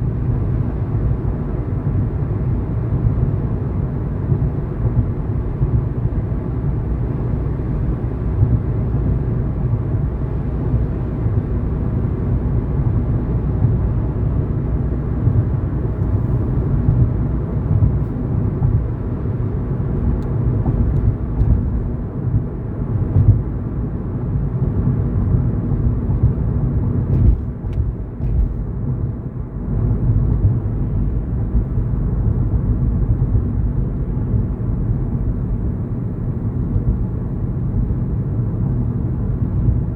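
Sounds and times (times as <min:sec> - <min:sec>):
car driving on road: 0:00.0 - 0:39.9.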